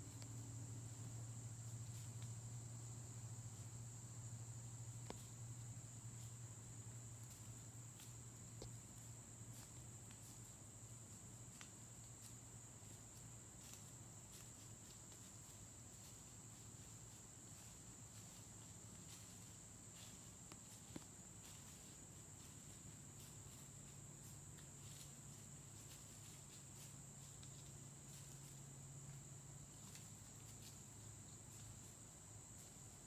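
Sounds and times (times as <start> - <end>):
faint ticks and rustles: 0.0 - 33.0
insect chorus drone: 0.0 - 33.0.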